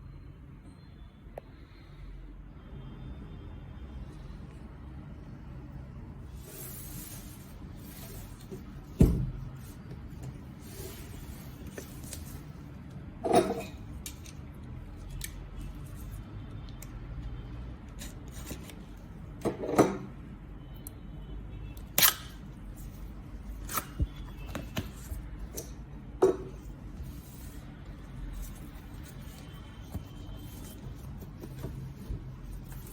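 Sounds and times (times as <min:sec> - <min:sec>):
knocks and clicks of packaging: 0:23.8 - 0:26.6.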